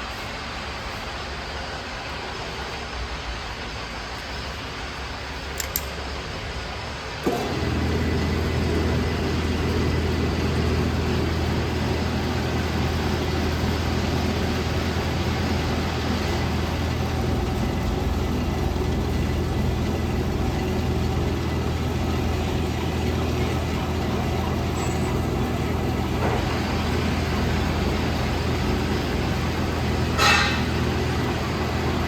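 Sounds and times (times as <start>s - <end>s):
metal lathe humming: 7.2s - 32.0s.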